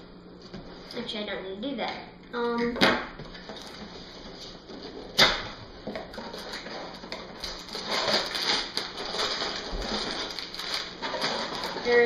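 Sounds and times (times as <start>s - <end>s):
plastic bags crinkling: 6.0s - 12.0s.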